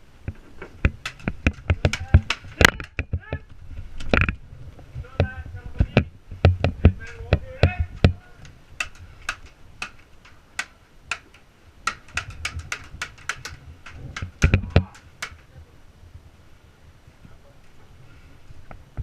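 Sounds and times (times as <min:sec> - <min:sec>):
sharp clicks and knocks: 0:00.3 - 0:03.4, 0:04.0 - 0:04.4, 0:05.1 - 0:15.5.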